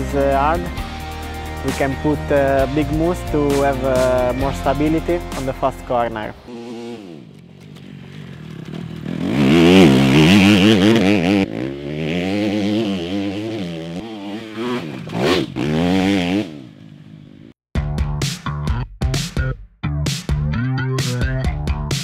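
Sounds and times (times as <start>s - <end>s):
motorcycle engine revving: 3.5s - 17.6s
music with steady beat: 17.8s - 22.0s.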